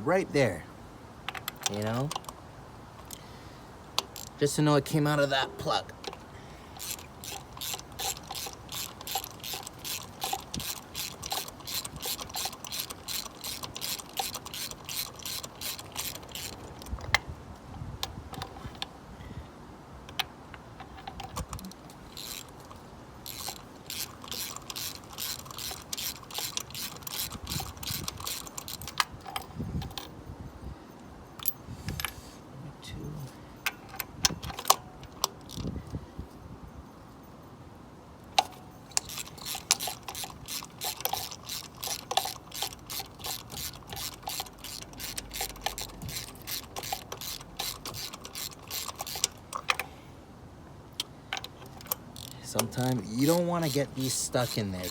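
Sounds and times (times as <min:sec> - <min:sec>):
ratchet clicking: 0:06.0 - 0:17.2, 0:20.1 - 0:30.1, 0:38.4 - 0:49.9, 0:51.0 - 0:54.9.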